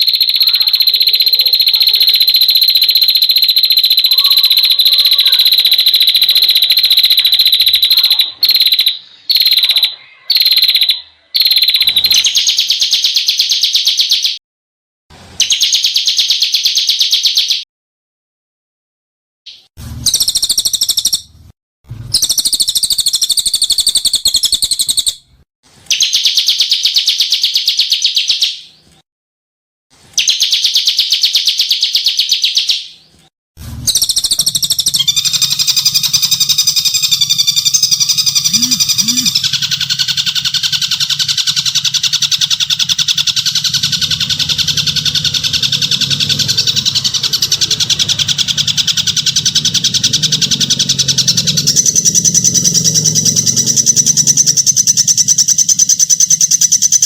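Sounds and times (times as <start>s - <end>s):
songbird chattering and rattling: 0.0s - 14.3s, 20.1s - 21.3s, 22.2s - 25.2s, 33.9s - 57.0s.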